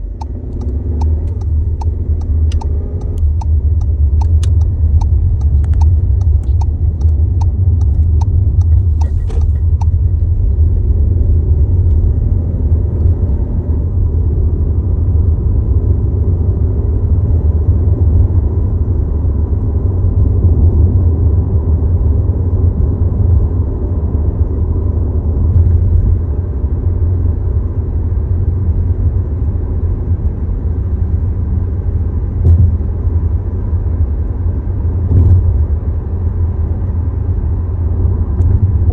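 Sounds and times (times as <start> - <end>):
low rumbling vibration: 0.0 - 38.9
quick light ticks: 0.2 - 10.0.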